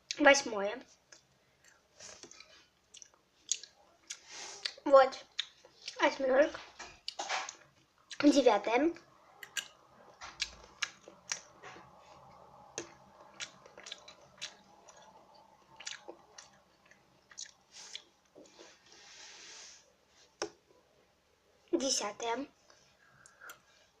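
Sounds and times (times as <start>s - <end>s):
mouth chewing wet food: 1.1s - 6.0s, 9.0s - 18.8s
soft breathy hiss: 4.2s - 4.9s, 17.6s - 20.4s.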